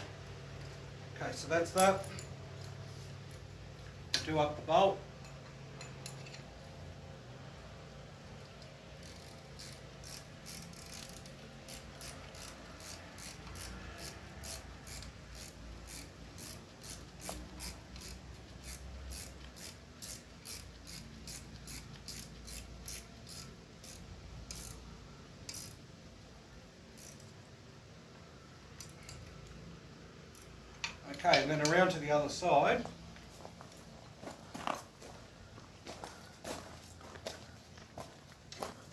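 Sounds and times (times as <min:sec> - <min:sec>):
ratchet wrench clicking: 0:08.6 - 0:25.8, 0:26.9 - 0:27.4, 0:28.7 - 0:29.6, 0:30.3 - 0:31.8.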